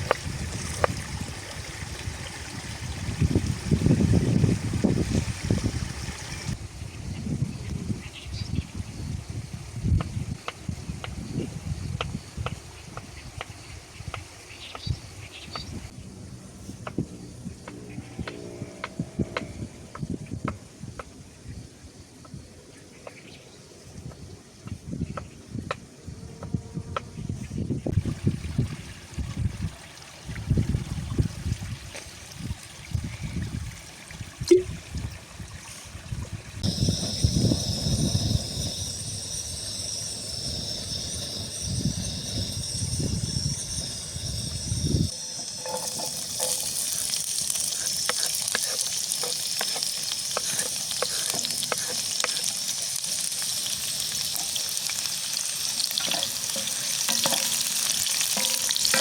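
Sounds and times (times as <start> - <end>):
wind buffeting microphone: 0.0 - 14.2, 24.0 - 45.2
food sizzling in a frying pan: 36.6 - 59.0
spoon stirring in a pan: 45.2 - 53.4, 56.0 - 59.0.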